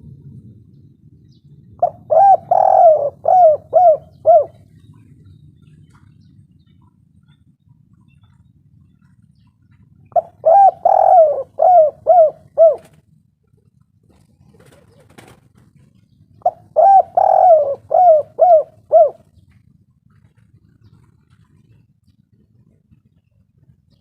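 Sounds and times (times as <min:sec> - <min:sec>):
dove cooing: 0:01.8 - 0:06.1, 0:10.1 - 0:13.0, 0:14.1 - 0:23.1.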